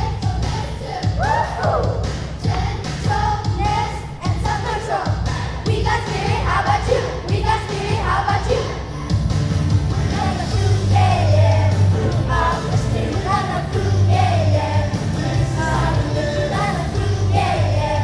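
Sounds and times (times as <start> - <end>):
person singing pop song: 0.0 - 9.2, 9.9 - 18.0
band with steady bass line: 5.2 - 18.0.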